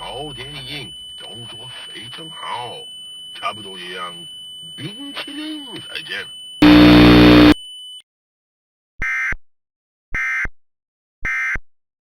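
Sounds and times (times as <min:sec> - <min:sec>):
loud buzzing tone: 0:06.6 - 0:07.6.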